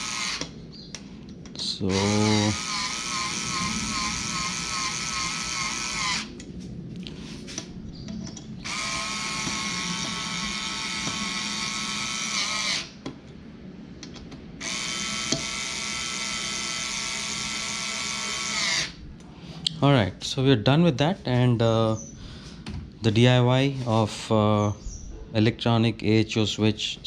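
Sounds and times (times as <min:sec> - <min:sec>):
power drill whining: 0:00.0 - 0:00.5, 0:01.8 - 0:06.4, 0:08.6 - 0:13.0, 0:14.6 - 0:19.0.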